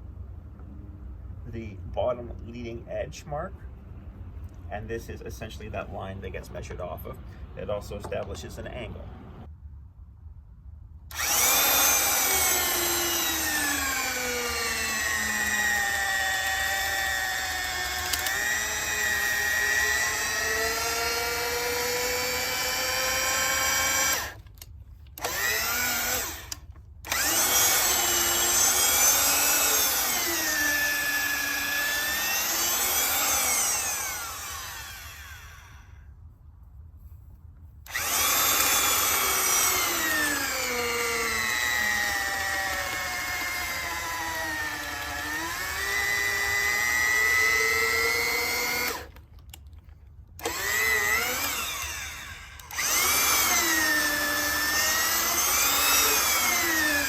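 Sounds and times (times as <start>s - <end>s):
power drill motor running: 11.1s - 36.0s, 37.9s - 49.8s, 50.4s - 57.0s.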